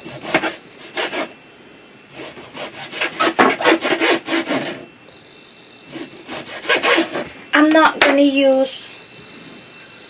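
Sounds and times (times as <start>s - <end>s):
rhythmic rasping scraping strokes: 2.1s - 4.9s, 5.8s - 7.5s.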